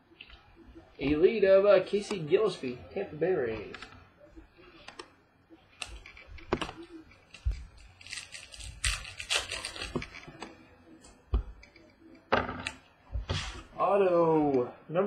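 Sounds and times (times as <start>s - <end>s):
cards and packaging rustling: 5.8s - 10.6s.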